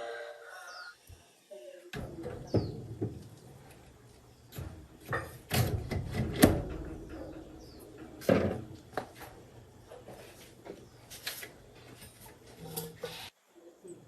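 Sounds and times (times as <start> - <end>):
knocks and clunks on an engine: 4.5 - 9.1.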